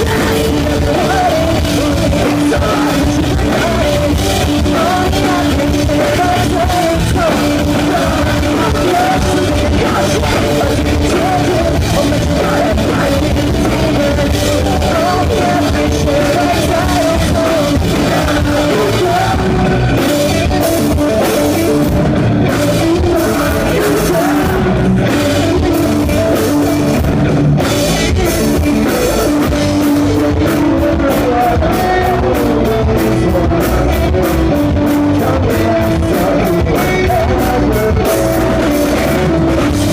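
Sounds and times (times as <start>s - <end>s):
pop-punk band playing: 0.0s - 39.9s.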